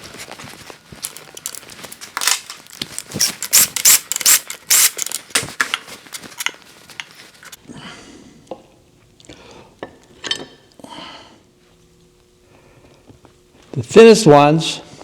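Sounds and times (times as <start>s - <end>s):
hand ratchet clicking: 2.2s - 5.2s.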